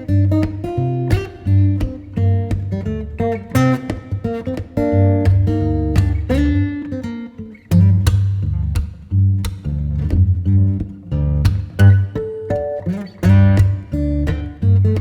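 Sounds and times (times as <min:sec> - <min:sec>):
acoustic guitar plucked and strummed: 0:00.0 - 0:15.0
bass line: 0:04.8 - 0:06.7, 0:07.7 - 0:12.2.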